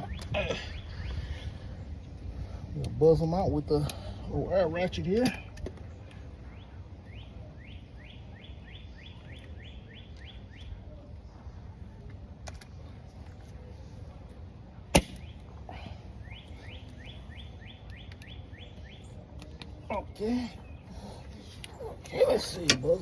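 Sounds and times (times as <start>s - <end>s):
bird chirping: 6.4s - 11.0s, 15.2s - 23.0s.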